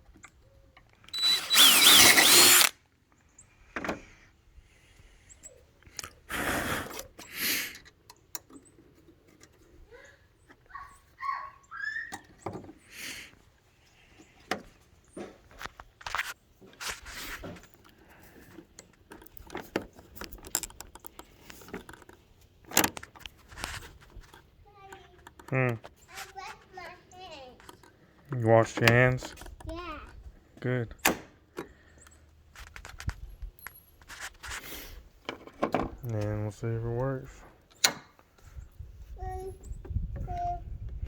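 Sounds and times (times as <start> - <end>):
tools clicking and rattling: 17.6 - 26.3.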